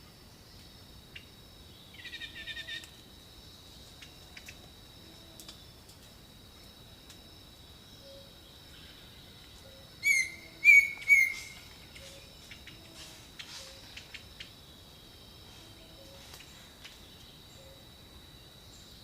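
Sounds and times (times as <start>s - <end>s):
high insect drone: 0.0s - 19.0s
faint low bird calls: 8.0s - 14.5s
loud rich bird calls: 8.1s - 14.4s
short bird chirps: 10.0s - 12.2s.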